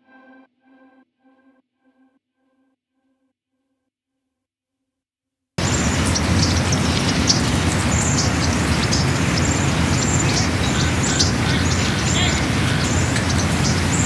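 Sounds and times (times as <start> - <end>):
birds chirping: 5.6 - 14.0
steady low rumble: 5.6 - 14.0.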